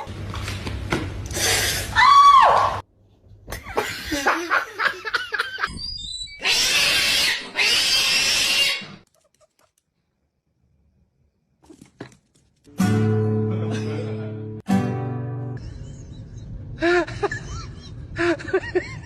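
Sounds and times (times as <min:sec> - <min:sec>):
animal squealing and grunting: 0:06.0 - 0:09.0.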